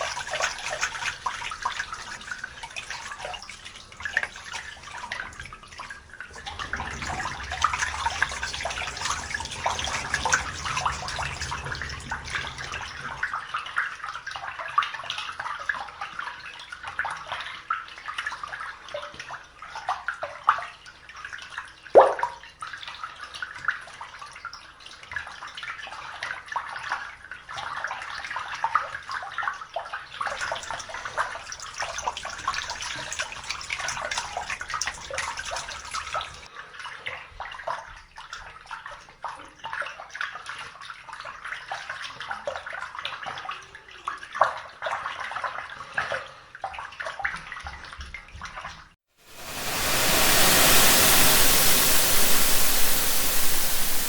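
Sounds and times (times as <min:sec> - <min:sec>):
water running and splashing: 0:00.0 - 0:13.2, 0:30.4 - 0:36.5, 0:49.3 - 0:54.0.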